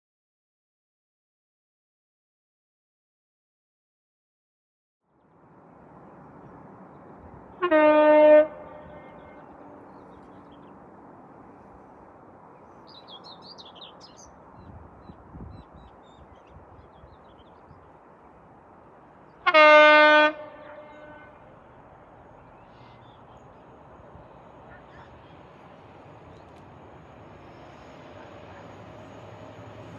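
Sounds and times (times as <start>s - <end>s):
rumble of rail traffic: 5.0s - 29.9s
train horn blasts: 7.6s - 9.9s, 19.4s - 21.6s
bird chirping: 12.6s - 18.0s.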